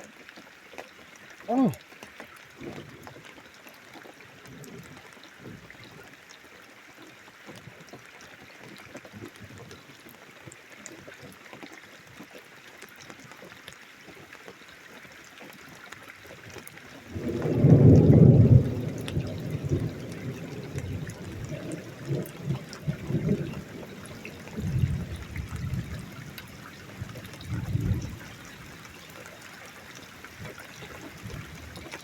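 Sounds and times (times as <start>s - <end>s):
rain pattering and dripping: 0.0s - 32.0s
low rumble of thunder: 17.0s - 32.0s.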